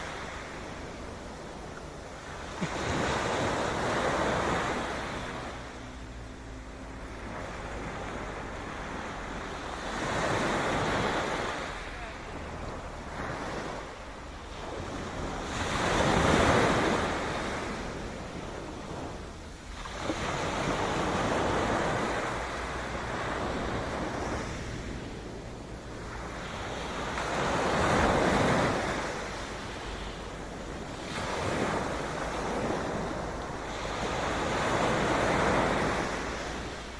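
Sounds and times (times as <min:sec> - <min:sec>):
sea waves washing in: 0:00.0 - 0:36.9
wind rumble on microphone: 0:00.0 - 0:36.9.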